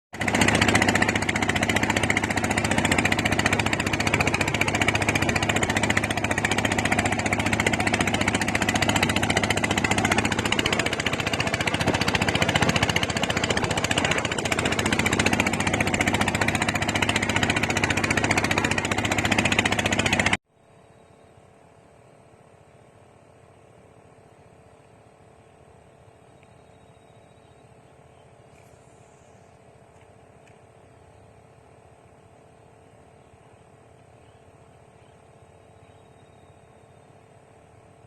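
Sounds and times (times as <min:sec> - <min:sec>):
engine running loudly: 0:00.2 - 0:20.4.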